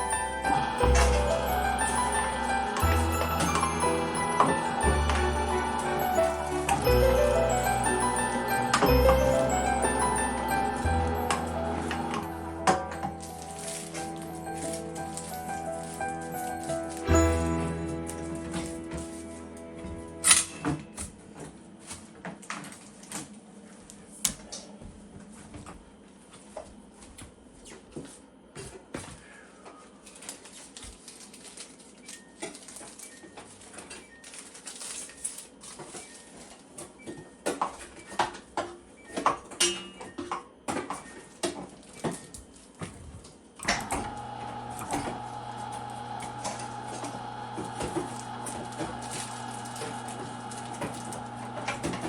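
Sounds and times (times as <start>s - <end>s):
electric meat grinder humming: 0.0s - 19.6s, 43.7s - 52.0s.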